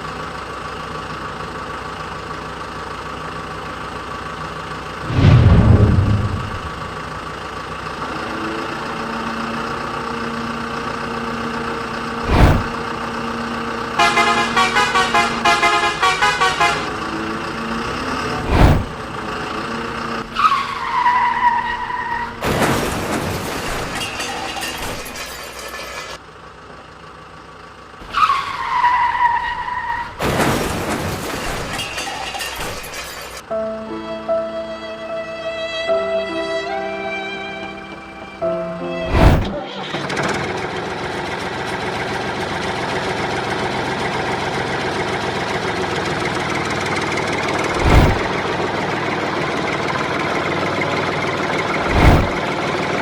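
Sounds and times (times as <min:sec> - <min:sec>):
short falling tone: 0:05.0 - 0:07.2
choppy horn toots: 0:14.0 - 0:17.1.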